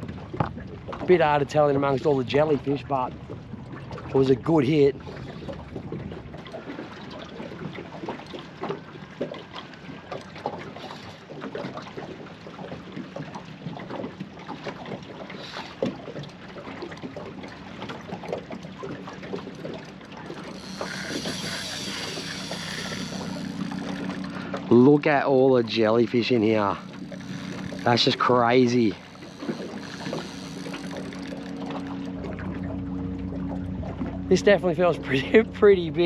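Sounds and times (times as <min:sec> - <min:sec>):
water slapping boat hull: 0:00.0 - 0:36.0
mechanical whirring: 0:20.3 - 0:24.4, 0:26.8 - 0:32.0.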